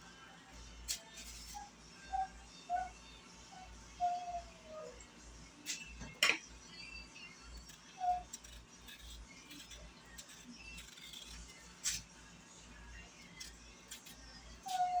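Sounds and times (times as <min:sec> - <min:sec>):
clinking utensils and dishes: 0:06.0 - 0:06.5.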